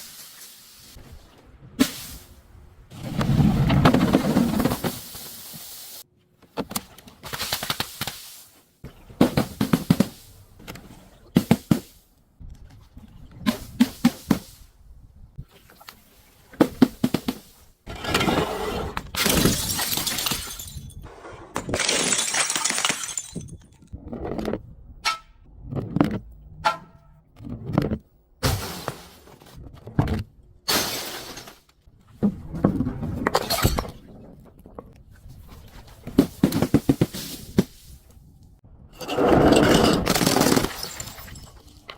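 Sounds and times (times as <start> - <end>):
glass bottles shattering: 19.2 - 23.9, 33.3 - 34.0, 39.0 - 41.8.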